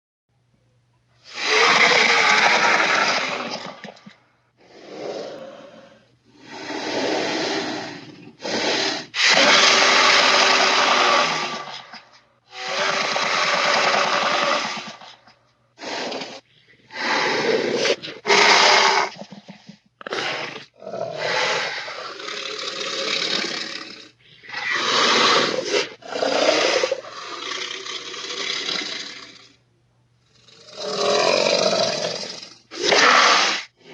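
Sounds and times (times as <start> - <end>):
faint low hum: 0.3 - 1.3, 29.2 - 30.7
dinosaur roars: 1.3 - 15.2, 15.8 - 19.4, 20.0 - 29.6, 30.4 - 33.9.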